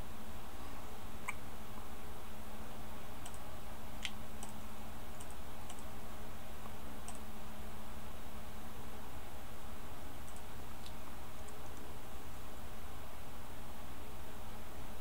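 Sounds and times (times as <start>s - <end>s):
low electrical hum: 0.0s - 15.0s
computer clicks: 3.2s - 3.4s, 5.2s - 5.9s, 10.2s - 11.9s.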